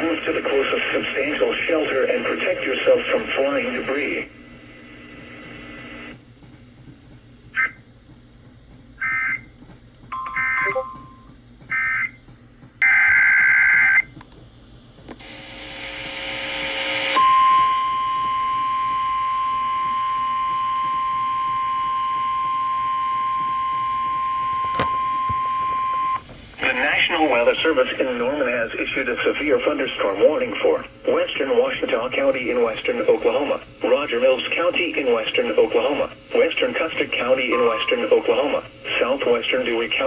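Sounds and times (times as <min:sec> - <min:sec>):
steady high alarm tone: 0:17.0 - 0:27.8, 0:32.6 - 0:39.9.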